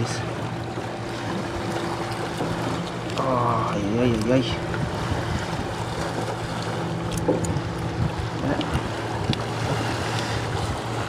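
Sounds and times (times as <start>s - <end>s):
sea waves washing: 0.0s - 11.0s
wind on microphone: 3.6s - 11.0s.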